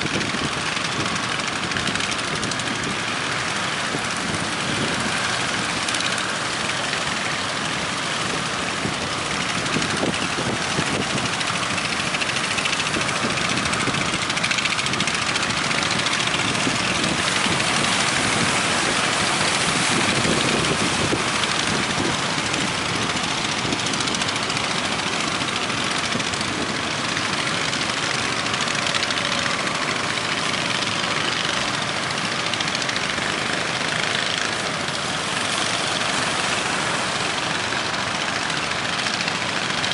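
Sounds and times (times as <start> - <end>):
strong wind: 0.0 - 30.2
boat engine running: 0.0 - 39.9
waves: 0.0 - 39.9.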